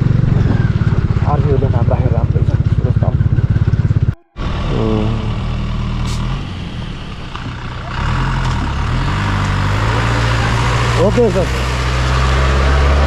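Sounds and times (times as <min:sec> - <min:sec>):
motorcycle engine running: 0:00.0 - 0:06.2.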